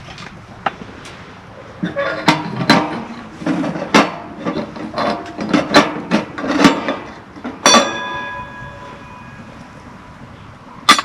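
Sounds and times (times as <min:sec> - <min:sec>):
sharp knocks and clatters: 0:02.2 - 0:08.6
ringing metallic clang: 0:07.6 - 0:09.6.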